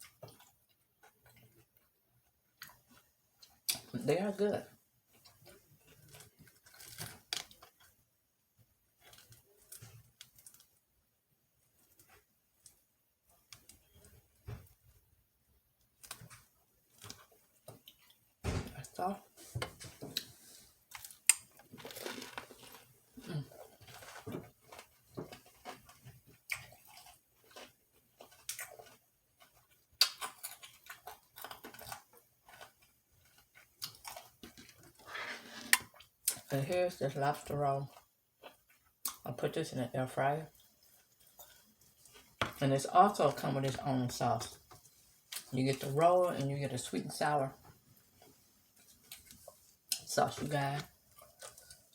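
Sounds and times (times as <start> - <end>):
crunchy chewing: 5.1 - 8.0, 19.7 - 36.5, 50.8 - 51.9.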